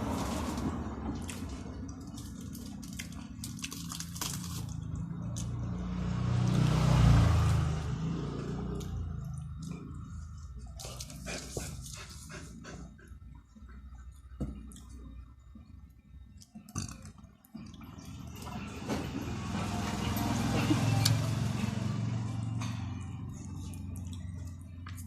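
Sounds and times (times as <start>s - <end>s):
wet chewing and mouth sounds: 0.0s - 5.7s, 8.5s - 18.6s, 23.0s - 25.0s.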